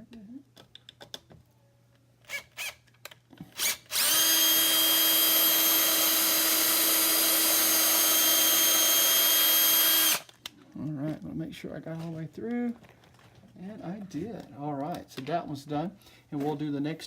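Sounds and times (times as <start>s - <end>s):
electric drill running: 2.3s - 2.8s, 3.5s - 10.3s.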